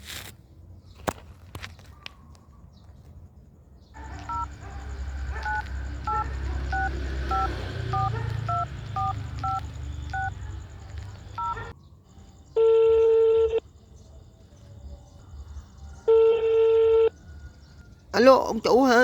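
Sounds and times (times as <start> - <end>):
phone keypad touch-tone beeps: 4.1 - 4.5, 5.4 - 11.7.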